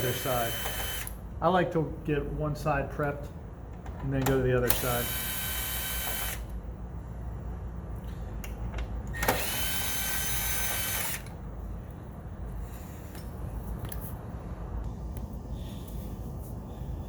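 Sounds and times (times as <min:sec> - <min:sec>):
power drill spinning: 0:00.0 - 0:01.1, 0:04.7 - 0:06.5, 0:09.1 - 0:11.4.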